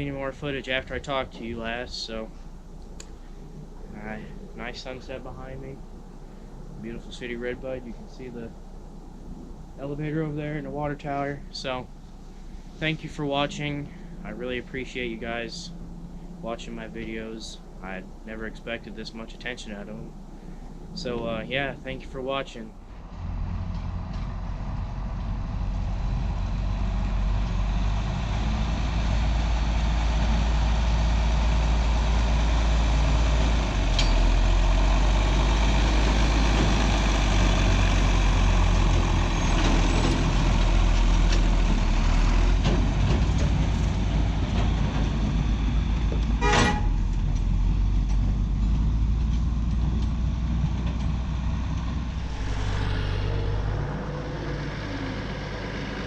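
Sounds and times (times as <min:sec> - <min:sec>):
heavy vehicle engine droning: 0:00.0 - 0:56.0
horn toot: 0:46.4 - 0:47.0.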